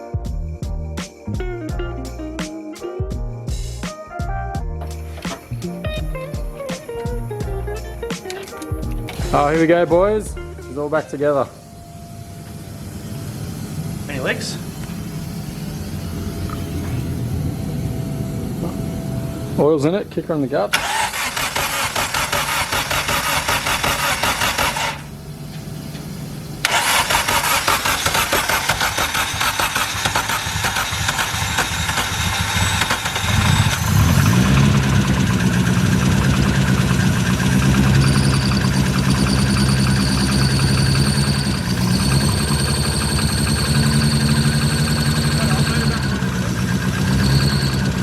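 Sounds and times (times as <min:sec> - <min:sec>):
car engine idling: 0:08.8 - 0:48.0
engine cranking on starter: 0:20.6 - 0:48.0.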